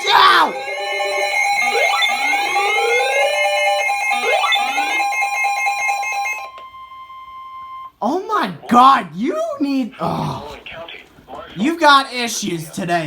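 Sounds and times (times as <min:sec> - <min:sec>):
emergency alert attention tone: 0:00.0 - 0:08.0.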